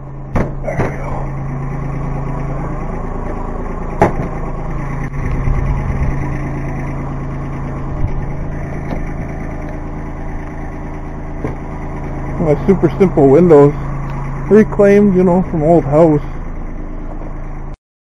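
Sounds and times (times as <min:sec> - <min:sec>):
tractor diesel engine idling: 0:00.0 - 0:17.8.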